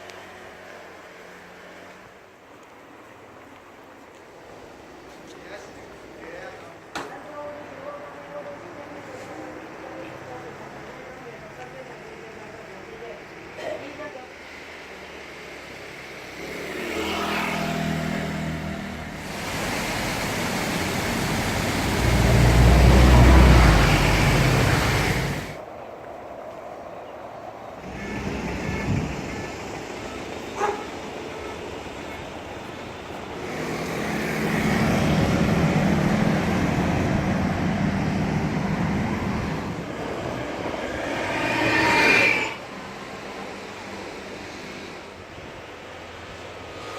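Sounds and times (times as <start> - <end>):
vehicle passing by: 15.4 - 25.6, 32.1 - 45.2
heavy vehicle engine rumble: 19.1 - 25.7.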